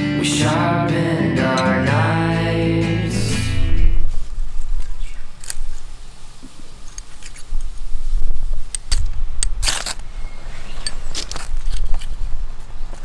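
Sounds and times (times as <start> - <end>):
steady low rumble: 0.5 - 5.4
scraping rustle: 4.0 - 13.0
clicks and clinks of objects: 8.7 - 10.1, 10.8 - 12.2.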